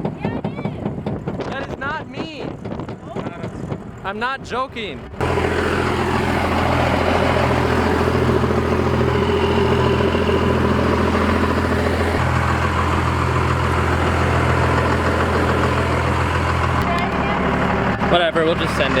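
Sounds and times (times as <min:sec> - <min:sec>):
diesel engine running: 0:05.1 - 0:19.0.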